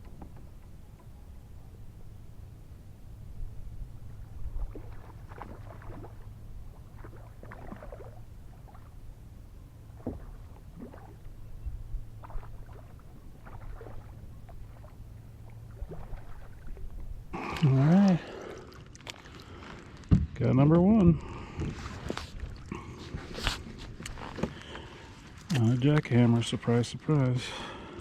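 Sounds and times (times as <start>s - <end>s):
steady low hum: 0.0s - 19.9s
water splashing and dripping: 4.5s - 8.9s, 12.2s - 19.6s.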